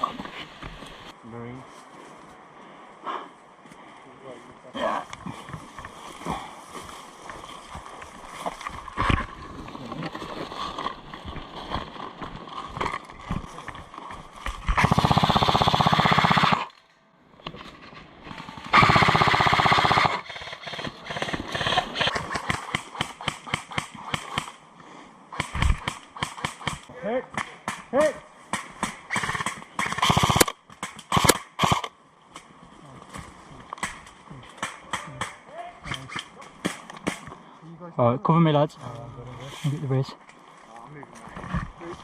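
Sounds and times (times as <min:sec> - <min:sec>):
airsoft gun full-auto bursts: 0:14.8 - 0:16.7, 0:18.7 - 0:24.5, 0:29.1 - 0:31.9
sharp clicks and pops: 0:18.3 - 0:24.6, 0:25.4 - 0:27.9, 0:28.5 - 0:32.5, 0:33.7 - 0:37.4.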